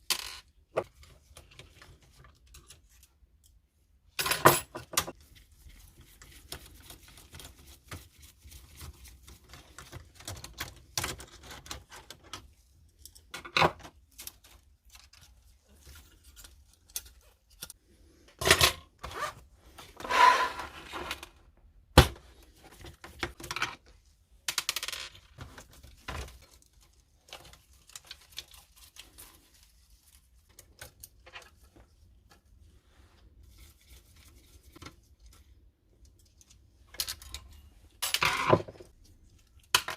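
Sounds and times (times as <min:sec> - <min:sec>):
rasping scrape: 0:19.9 - 0:21.2.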